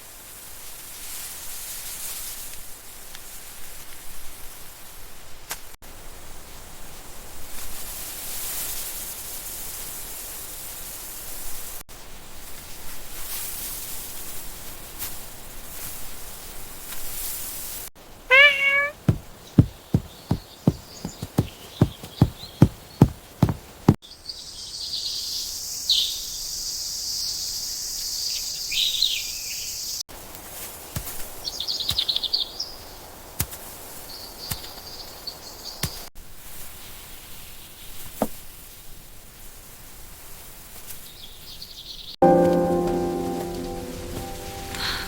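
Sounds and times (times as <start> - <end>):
dull knocks: 18.9 - 24.0.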